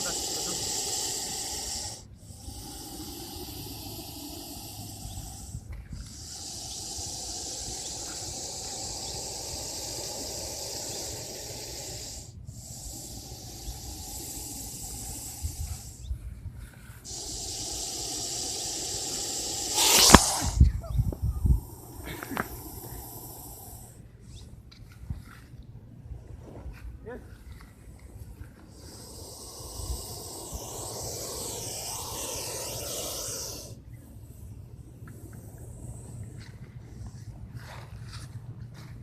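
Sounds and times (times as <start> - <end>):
snake hissing loudly: 0.0 - 16.1, 17.0 - 24.0, 28.7 - 36.5.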